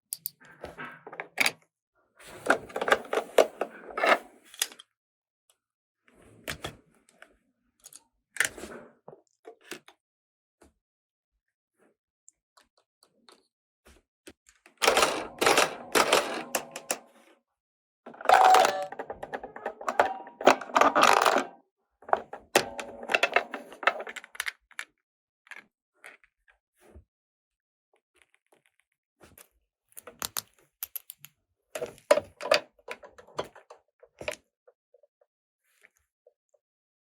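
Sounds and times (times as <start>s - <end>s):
plastic toy pieces clattering: 14.8s - 17.0s, 18.1s - 24.8s.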